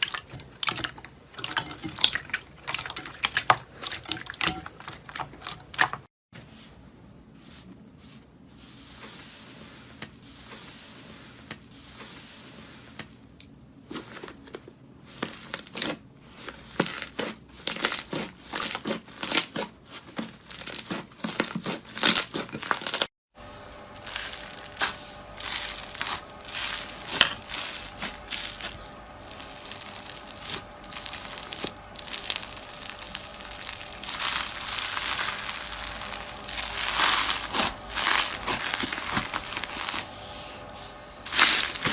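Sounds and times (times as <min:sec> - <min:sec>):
slime squeezed by hand crackling: 0:27.5 - 0:40.0.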